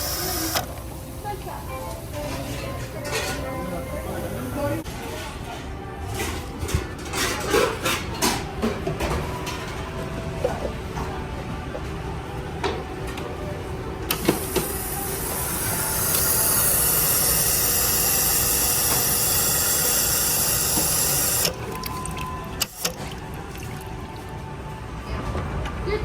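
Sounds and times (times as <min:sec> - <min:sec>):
toilet flushing water: 0:14.2 - 0:24.4.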